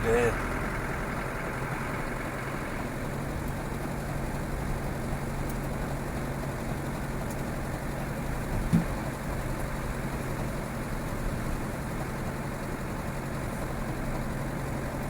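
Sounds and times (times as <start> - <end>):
low engine drone inside vehicle: 0.0 - 5.6.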